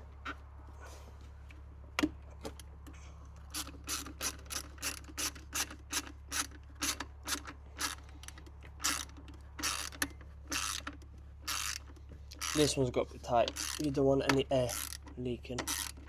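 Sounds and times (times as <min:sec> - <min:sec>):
hand ratchet clicking: 0:03.5 - 0:12.8, 0:13.4 - 0:16.0.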